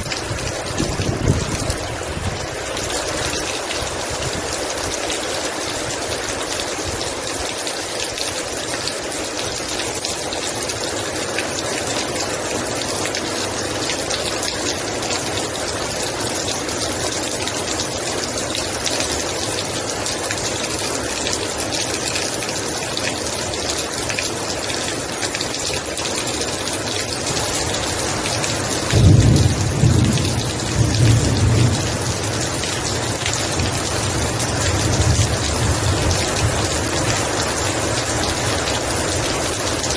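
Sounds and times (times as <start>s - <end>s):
thunder rumbling: 0.0s - 2.6s, 28.9s - 36.8s
heavy rain falling: 0.0s - 39.9s.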